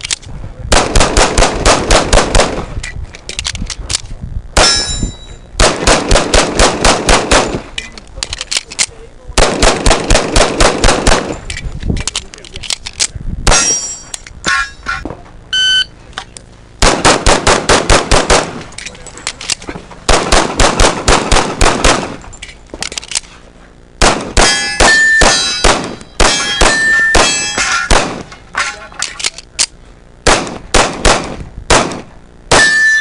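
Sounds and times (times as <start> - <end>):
pistol shots: 0.7 - 2.7, 5.6 - 7.8, 9.4 - 11.4, 16.8 - 18.7, 20.1 - 22.2, 24.0 - 28.4, 30.2 - 33.0
steel targets clanging: 4.6 - 5.5, 13.5 - 15.2, 24.4 - 29.3, 32.5 - 33.0.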